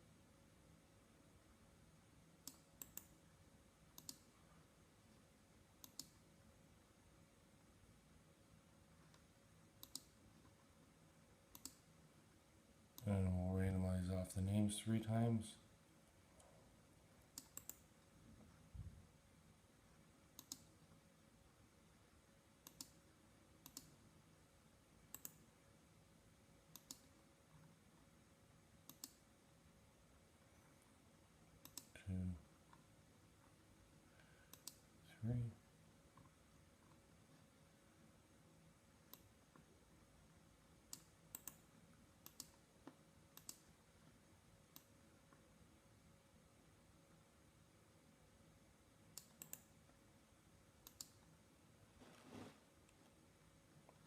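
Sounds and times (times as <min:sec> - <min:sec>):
computer mouse clicks: 0:02.4 - 0:03.2, 0:03.9 - 0:04.3, 0:05.8 - 0:06.3, 0:09.1 - 0:10.6, 0:11.5 - 0:11.9, 0:17.2 - 0:18.0, 0:20.3 - 0:20.8, 0:22.6 - 0:23.0, 0:23.6 - 0:24.0, 0:25.1 - 0:25.5, 0:26.7 - 0:27.7, 0:28.8 - 0:29.3, 0:31.6 - 0:32.0, 0:34.5 - 0:34.9, 0:39.0 - 0:39.7, 0:40.9 - 0:43.7, 0:44.7 - 0:45.4, 0:49.1 - 0:49.8, 0:50.8 - 0:51.3
computer mouse button clicking: 0:04.0 - 0:04.2, 0:05.8 - 0:06.2, 0:09.8 - 0:10.1, 0:11.5 - 0:11.8, 0:17.4 - 0:17.8, 0:22.6 - 0:23.0, 0:25.1 - 0:25.4, 0:26.7 - 0:27.1, 0:49.2 - 0:49.6.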